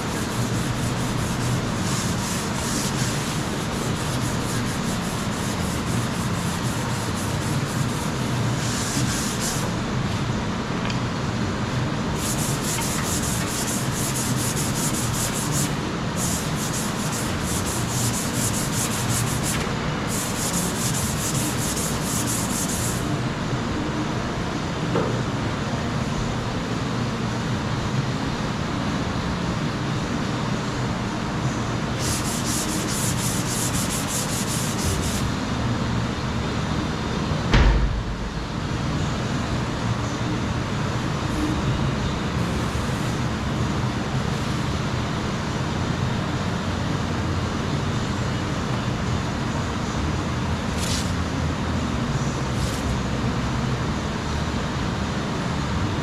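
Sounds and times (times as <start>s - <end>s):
sanding body filler: 0.0s - 9.8s, 12.2s - 23.1s, 32.0s - 35.4s
loud thump: 37.5s - 38.8s.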